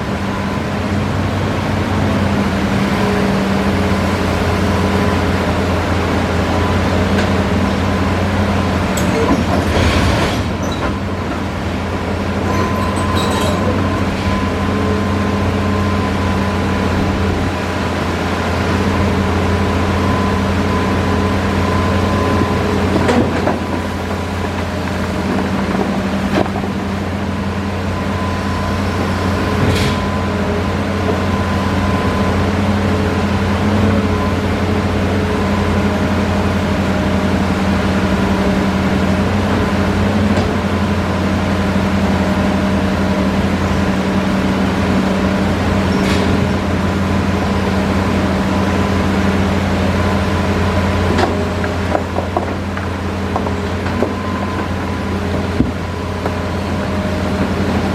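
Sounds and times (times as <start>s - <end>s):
excavator engine running: 16.6s - 20.4s.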